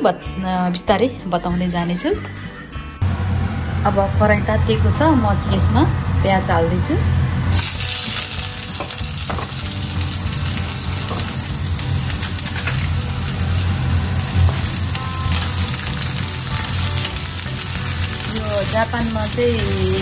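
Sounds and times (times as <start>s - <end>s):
onions sizzling in hot oil: 7.5s - 20.0s.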